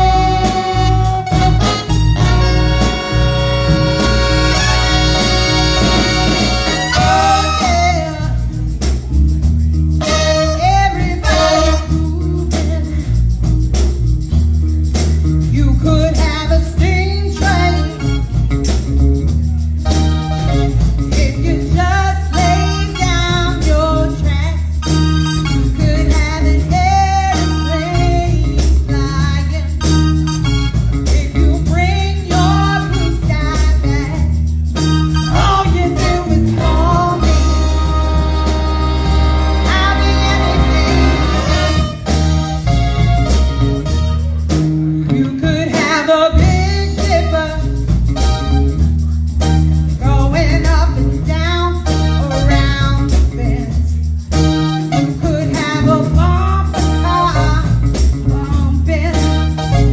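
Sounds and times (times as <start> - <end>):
person singing: 0.0 - 8.6, 10.4 - 13.1, 35.3 - 42.1
live band playing: 0.0 - 59.9.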